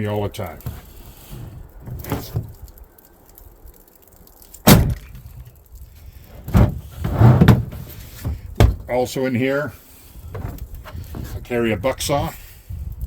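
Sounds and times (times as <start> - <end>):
rustling: 0.0 - 11.6
gear thumping in vehicle: 6.2 - 9.0, 10.2 - 11.6
knocks: 6.5 - 8.9.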